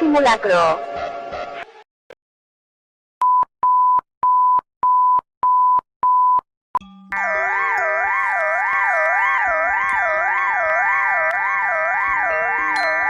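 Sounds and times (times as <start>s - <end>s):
warbling alarm tone: 7.1s - 13.0s.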